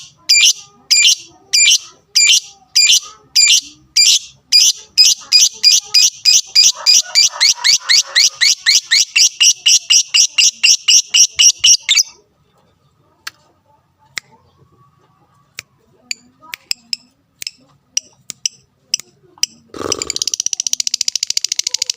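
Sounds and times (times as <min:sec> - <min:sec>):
lovebird chattering song: 0:00.0 - 0:12.2, 0:16.1 - 0:21.9.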